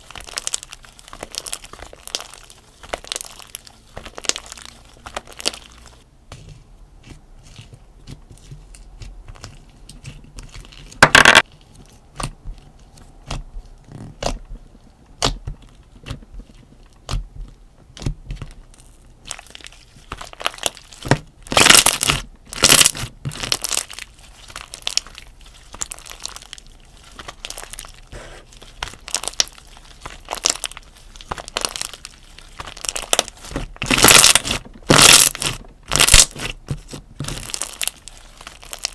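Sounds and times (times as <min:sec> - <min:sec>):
slime being squeezed: 0:19.3 - 0:38.9.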